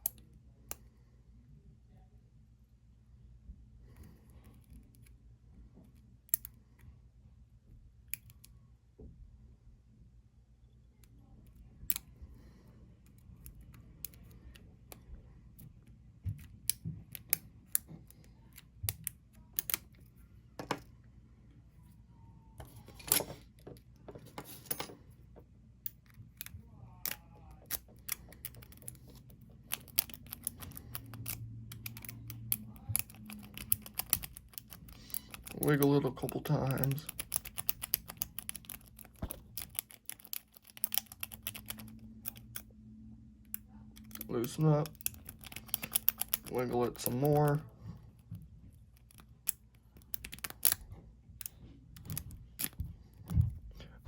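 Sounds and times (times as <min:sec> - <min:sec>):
lock pick clicks and scrapes: 0:16.4 - 0:20.0, 0:25.8 - 0:42.7, 0:43.5 - 0:47.5, 0:48.9 - 0:53.3.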